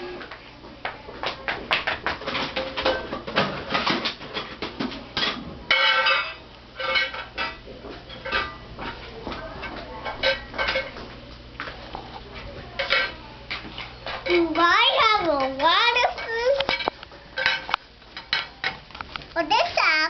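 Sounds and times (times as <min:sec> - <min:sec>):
toy dishes clattering: 0:05.2 - 0:08.6, 0:12.8 - 0:18.8.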